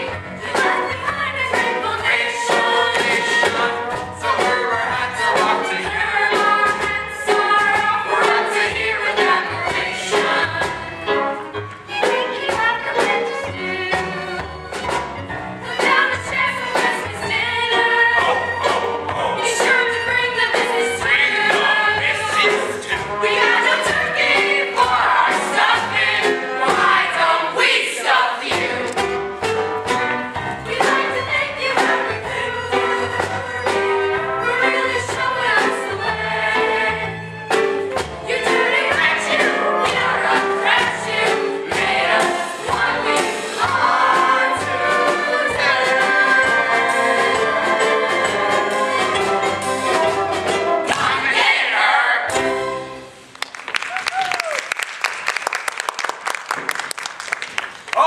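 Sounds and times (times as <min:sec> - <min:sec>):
chorus singing show tune: 0:00.0 - 0:10.9, 0:15.6 - 0:29.0, 0:38.2 - 0:53.0
instrumental accompaniment: 0:00.0 - 0:51.6.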